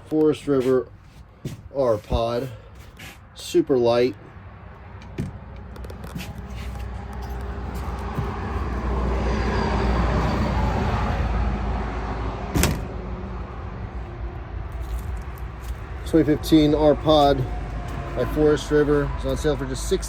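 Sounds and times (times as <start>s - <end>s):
road vehicle passing: 0.0s - 20.0s.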